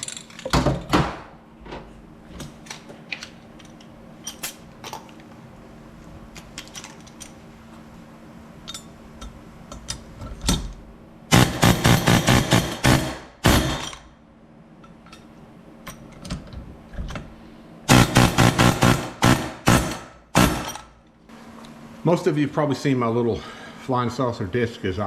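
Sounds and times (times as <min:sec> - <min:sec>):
metal tools clinking: 0:00.0 - 0:00.6.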